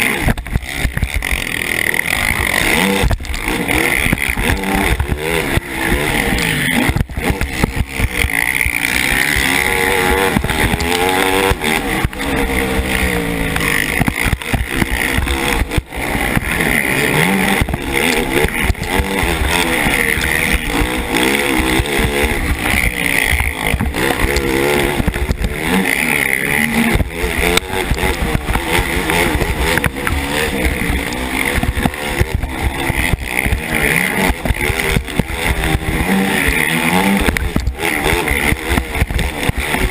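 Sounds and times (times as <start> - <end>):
quad engine revving: 0.0 - 39.9.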